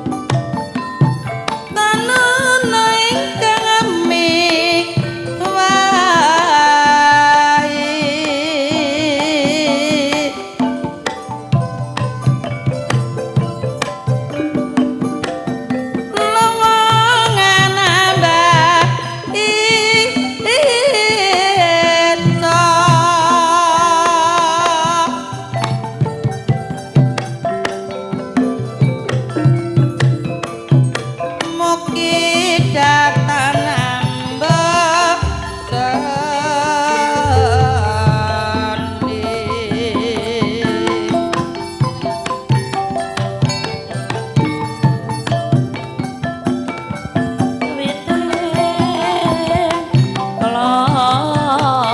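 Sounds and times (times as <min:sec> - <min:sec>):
gamelan accompaniment: 0:00.0 - 0:51.9
hand drum strokes: 0:00.0 - 0:51.9
woman singing: 0:01.6 - 0:11.6, 0:16.0 - 0:25.9, 0:31.3 - 0:42.3, 0:47.6 - 0:51.9
low hand drum strokes: 0:34.5 - 0:42.0.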